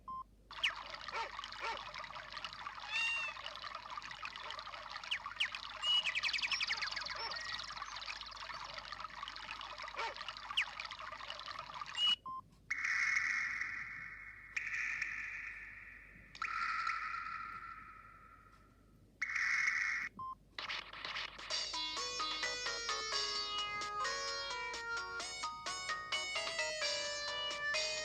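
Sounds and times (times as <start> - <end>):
bird chirps: 0.5 - 1.0, 2.8 - 3.5, 4.2 - 10.9, 11.9 - 12.9
water trickling ringtone: 0.5 - 12.2, 21.4 - 28.0
phone ringtone: 21.5 - 28.0.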